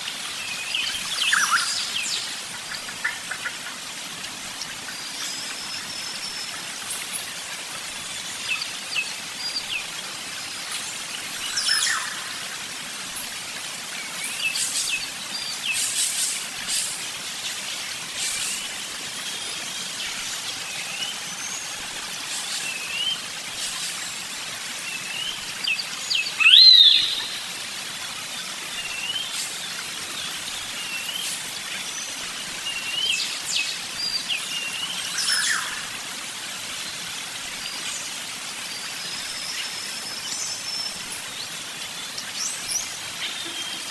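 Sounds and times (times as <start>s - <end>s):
background hiss: 0.0s - 43.9s.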